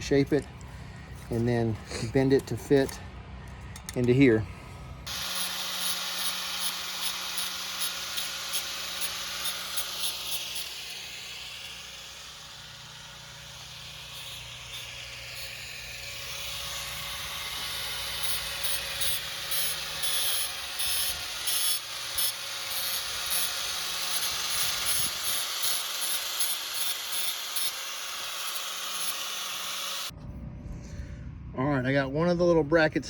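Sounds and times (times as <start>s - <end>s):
sharp scraping strokes on metal: 5.0s - 30.1s.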